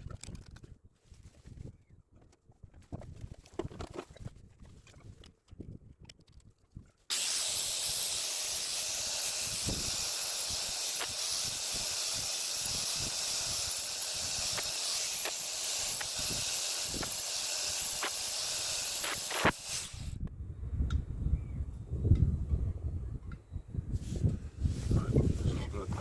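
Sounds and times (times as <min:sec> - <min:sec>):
angle grinder grinding steel: 0:07.1 - 0:20.2.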